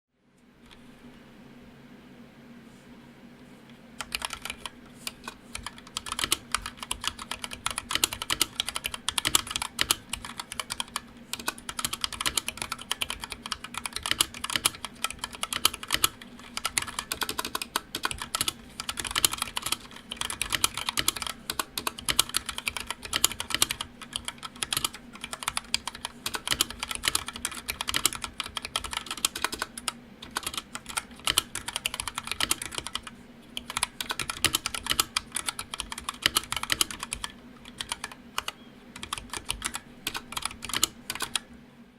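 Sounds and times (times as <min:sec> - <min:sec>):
fast mechanical keyboard typing: 0:04.0 - 0:41.5.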